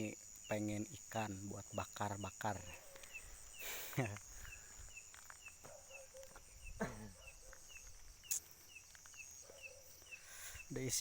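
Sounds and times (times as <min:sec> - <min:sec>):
insect chirps: 0:00.0 - 0:11.0
insect high trill: 0:00.0 - 0:11.0
faint dog bark: 0:02.7 - 0:03.2, 0:05.6 - 0:07.8, 0:09.4 - 0:10.2.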